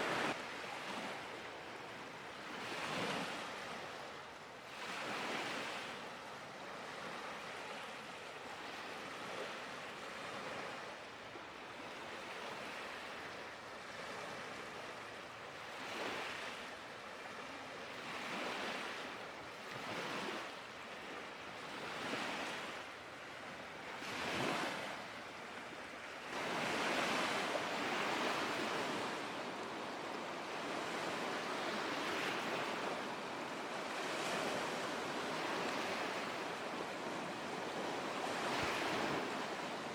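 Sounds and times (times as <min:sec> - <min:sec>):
lake waves splashing on shore: 0:26.4 - 0:39.9.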